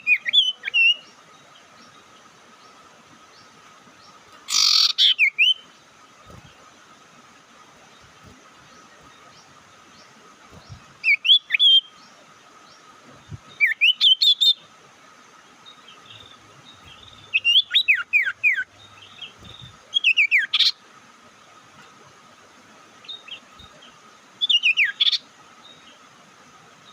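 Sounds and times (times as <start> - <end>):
faint steady hum: 0.0 - 26.9
tailorbird calling: 4.4 - 5.7, 16.0 - 20.8.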